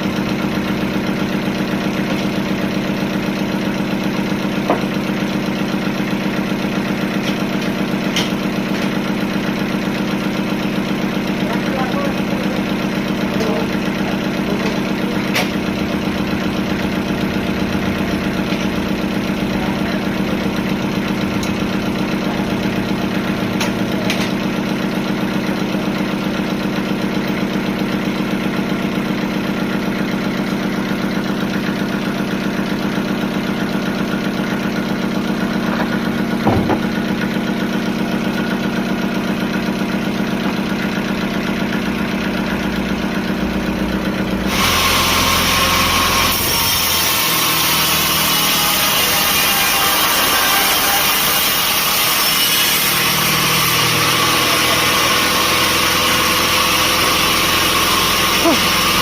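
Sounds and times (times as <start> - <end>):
sawmill machinery humming: 0.0 - 59.0
short knock: 35.8 - 36.9.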